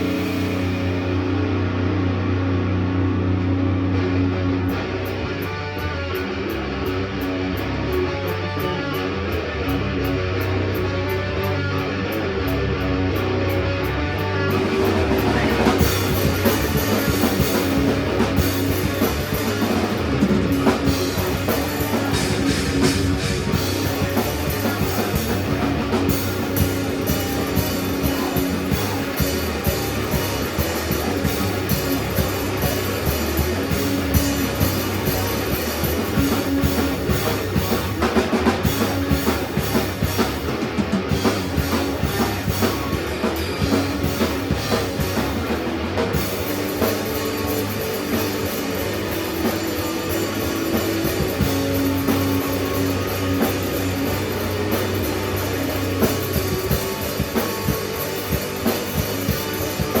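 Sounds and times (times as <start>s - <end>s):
drum kit beat: 0.0s - 1.7s, 13.8s - 60.0s
rock guitar: 0.0s - 60.0s.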